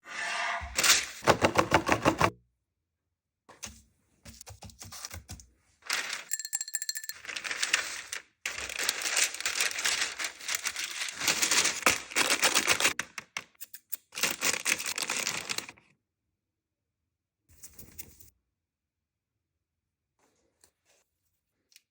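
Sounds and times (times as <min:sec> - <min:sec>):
rustling: 0:07.2 - 0:12.4.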